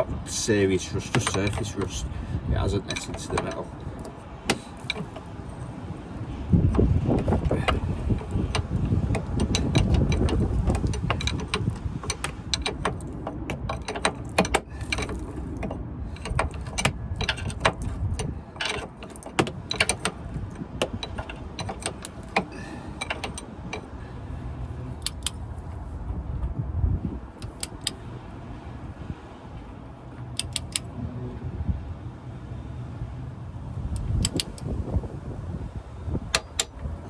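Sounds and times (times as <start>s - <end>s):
metallic clicks of hand tools: 1.0s - 2.0s, 2.8s - 5.3s, 6.7s - 20.2s, 20.8s - 23.9s, 25.0s - 25.4s, 27.4s - 28.0s, 30.4s - 30.9s, 34.0s - 34.7s, 36.3s - 36.9s.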